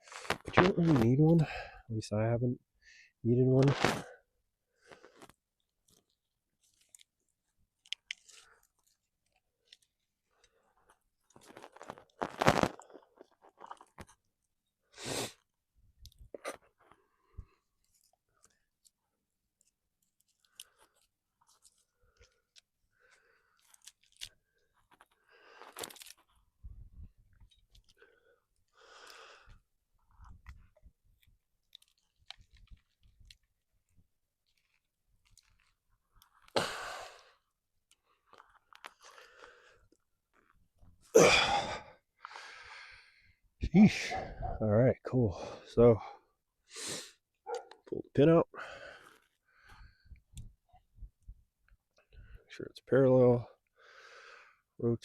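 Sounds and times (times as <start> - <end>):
gear rustling and scraping: 5.0 - 14.2, 17.7 - 26.6, 30.0 - 36.5
man exhaling with effort: 36.5 - 37.3, 41.1 - 43.0.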